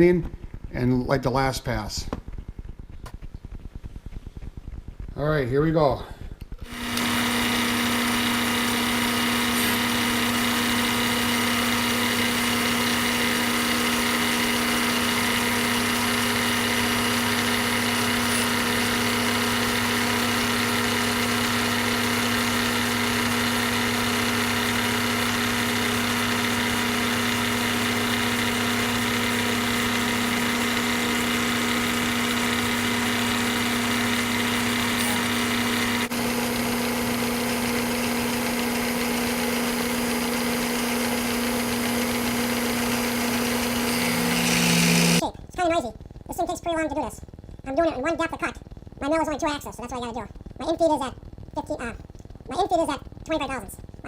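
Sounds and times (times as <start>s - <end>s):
milling machine cutting metal: 6.6s - 45.2s.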